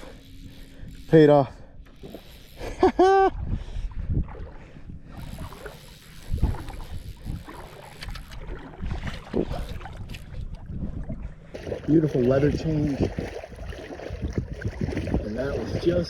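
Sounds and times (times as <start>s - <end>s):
wind buffeting microphone: 3.3s - 16.0s
water sloshing: 3.8s - 16.0s.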